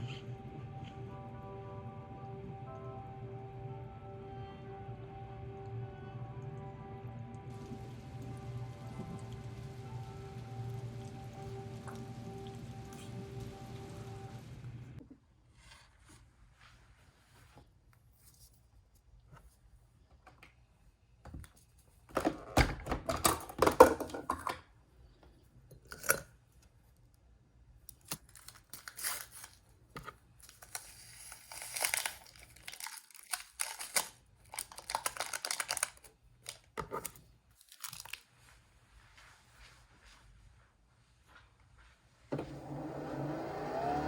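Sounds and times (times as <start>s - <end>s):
paper crinkling and tearing: 28.0s - 38.3s.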